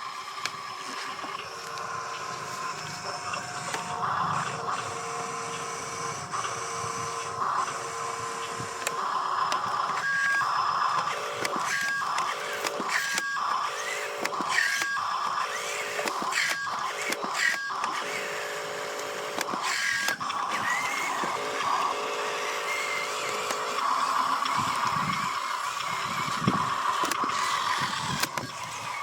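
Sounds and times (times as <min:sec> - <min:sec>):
small electric motors whining: 0:00.0 - 0:29.0.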